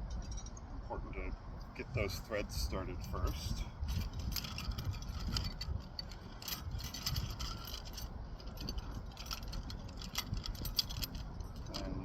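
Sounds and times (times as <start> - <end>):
low wind rumble on microphone: 0.0 - 12.0
small clicks and clinks: 0.1 - 0.7, 3.2 - 12.0.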